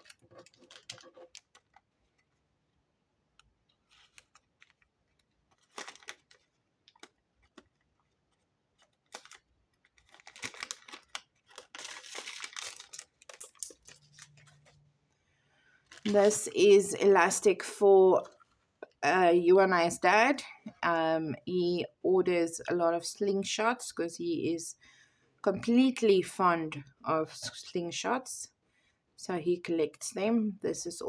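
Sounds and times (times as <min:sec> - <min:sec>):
plastic packaging crinkling: 0:00.0 - 0:02.5, 0:03.7 - 0:14.9, 0:15.8 - 0:17.5
plastic packaging clicks and taps: 0:03.4 - 0:07.9, 0:08.8 - 0:14.8.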